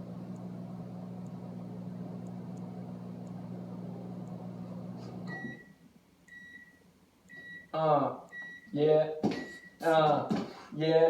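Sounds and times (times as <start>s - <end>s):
microwave oven humming: 0.0s - 5.7s.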